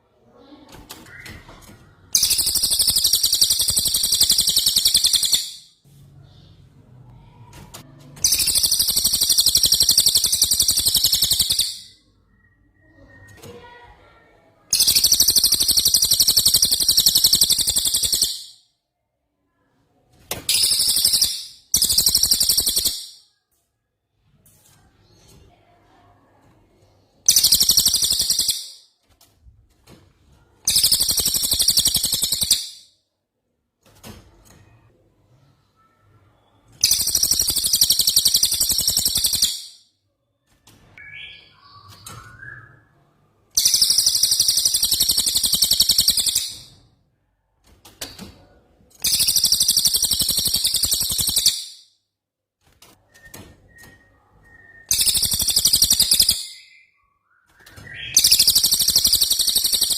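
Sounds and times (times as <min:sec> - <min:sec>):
soft bird chirps: 0:00.2 - 0:07.5, 0:08.2 - 0:18.6, 0:20.5 - 0:23.5, 0:24.1 - 0:28.9, 0:34.6 - 0:46.9, 0:49.0 - 0:51.8, 0:53.0 - 0:59.9
songbird rattling trill: 0:02.2 - 0:05.7, 0:08.2 - 0:12.0, 0:14.7 - 0:18.6, 0:20.5 - 0:23.2, 0:27.2 - 0:28.8, 0:30.7 - 0:32.9, 0:36.8 - 0:39.8, 0:43.6 - 0:46.7, 0:49.0 - 0:51.8, 0:54.8 - 0:56.7, 0:57.9 - 0:59.9.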